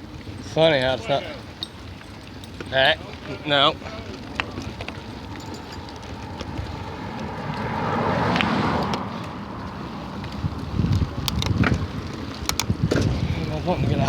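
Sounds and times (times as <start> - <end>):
vehicle passing by: 4.1 - 12.5
wind on microphone: 5.0 - 14.0.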